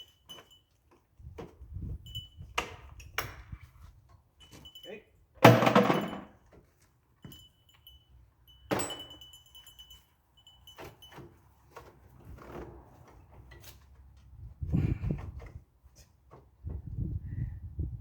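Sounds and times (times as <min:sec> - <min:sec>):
metal tools clinking and rattling: 0:04.4 - 0:06.5, 0:07.2 - 0:11.3.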